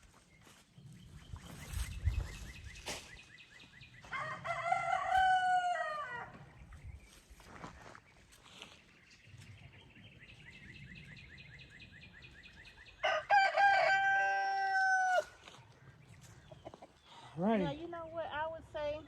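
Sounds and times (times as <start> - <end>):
rooster crowing: 4.1 - 6.3, 13.0 - 15.4.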